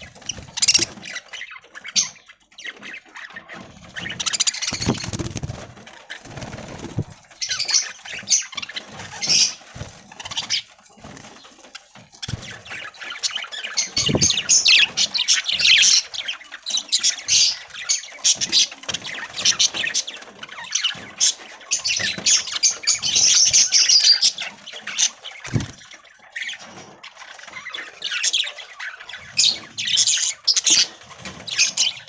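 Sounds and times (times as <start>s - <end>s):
budgerigars chirping: 0.0s - 9.6s, 12.2s - 26.7s
wing flapping: 3.6s - 15.4s, 25.4s - 25.9s.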